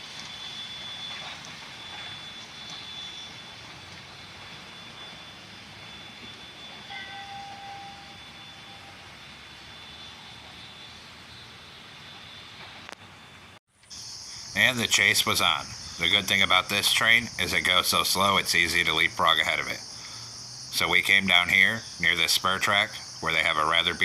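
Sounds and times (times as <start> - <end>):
train whistle: 0.0 - 12.8
insect drone: 0.0 - 24.0
steam train rumbling: 0.0 - 24.0.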